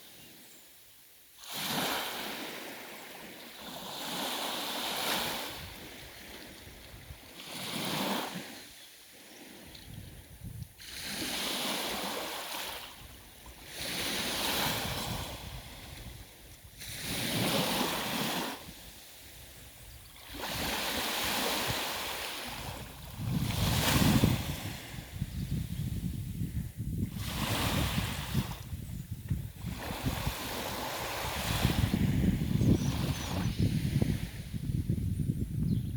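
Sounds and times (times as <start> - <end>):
wind rumble on microphone: 5.2 - 8.4, 9.4 - 35.9
sea waves washing onto shore: 10.8 - 25.3, 27.1 - 28.7, 29.6 - 34.6.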